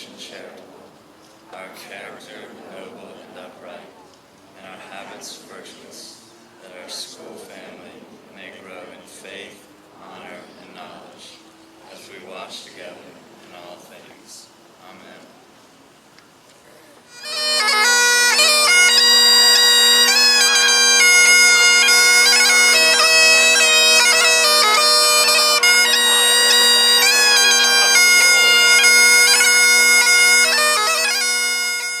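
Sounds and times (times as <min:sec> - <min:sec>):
bagpipes playing: 0:17.1 - 0:32.0.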